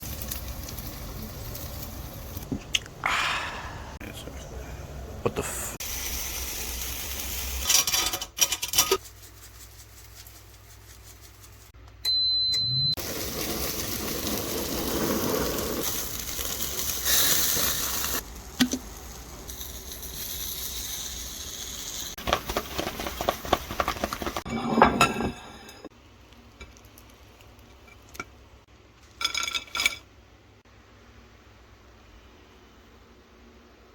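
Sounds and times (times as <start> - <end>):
food sizzling in a pan: 0.0 - 2.4, 5.8 - 7.7, 12.8 - 24.5
utensils scraping cookware: 22.5 - 25.9.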